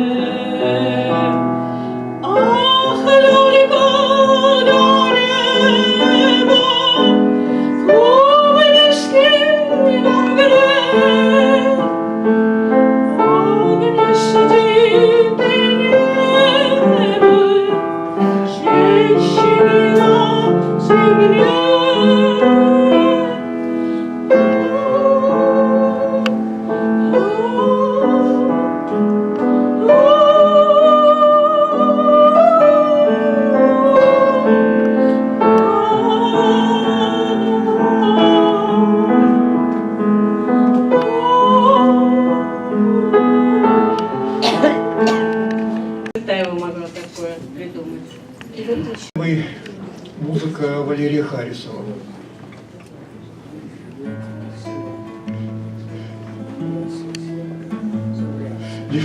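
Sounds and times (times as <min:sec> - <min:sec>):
woman singing operatically: 0:00.0 - 0:01.5, 0:02.2 - 0:11.9, 0:13.0 - 0:23.6, 0:24.2 - 0:28.9, 0:29.6 - 0:39.6, 0:40.8 - 0:44.1
piano accompaniment: 0:00.0 - 0:49.4, 0:53.0 - 0:59.0.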